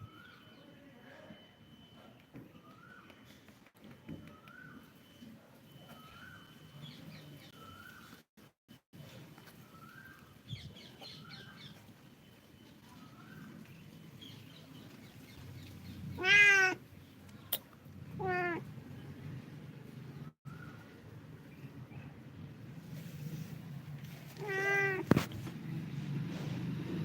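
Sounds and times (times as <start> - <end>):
cat meowing loudly: 16.2 - 16.8, 18.2 - 18.7, 24.4 - 25.1.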